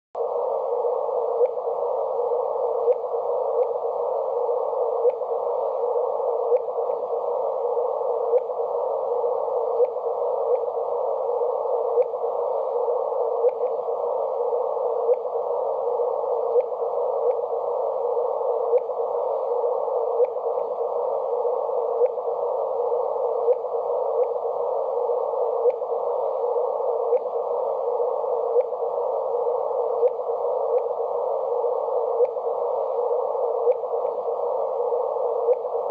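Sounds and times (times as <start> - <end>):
narrow-band static hiss: 0.2 - 35.9
faint ticks: 1.4 - 1.6, 2.8 - 3.8, 9.8 - 10.7, 20.2 - 20.7, 33.6 - 34.2, 35.5 - 35.7.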